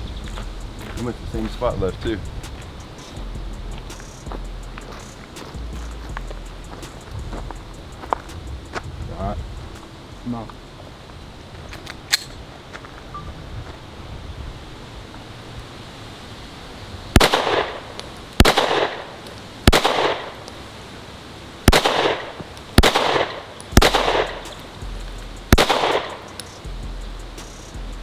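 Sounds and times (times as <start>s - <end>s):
pistol shots with echo: 17.2s - 20.4s, 21.7s - 24.8s, 25.5s - 26.4s.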